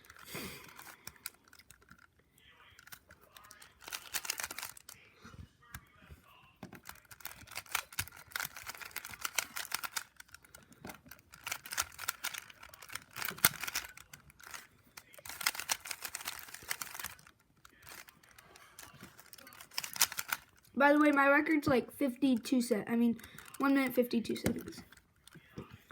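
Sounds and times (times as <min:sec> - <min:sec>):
plastic puzzle cube clicking: 0:00.0 - 0:02.1, 0:02.8 - 0:05.0, 0:06.7 - 0:20.8, 0:23.2 - 0:25.7.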